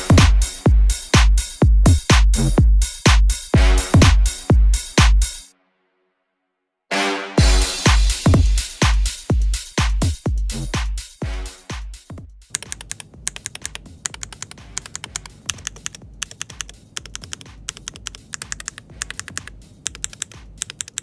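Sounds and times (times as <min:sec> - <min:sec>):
fast keyboard typing: 0:12.5 - 0:21.0.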